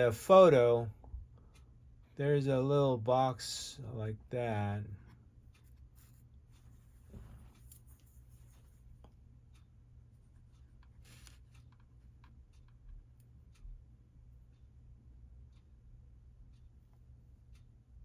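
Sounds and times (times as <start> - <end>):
low steady hum: 0.0 - 18.0
clicks and rustles of handling: 5.0 - 9.3, 10.2 - 12.9.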